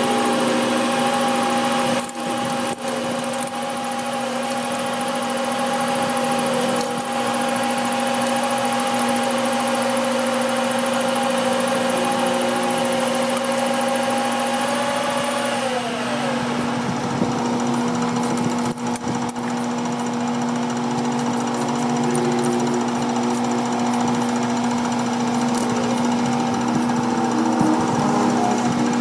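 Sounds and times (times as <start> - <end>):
machine motor humming: 0.0 - 29.0.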